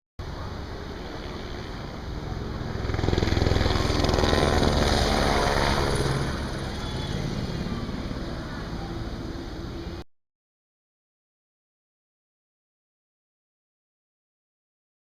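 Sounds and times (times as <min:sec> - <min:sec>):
helicopter rotor beat: 0:00.2 - 0:10.0.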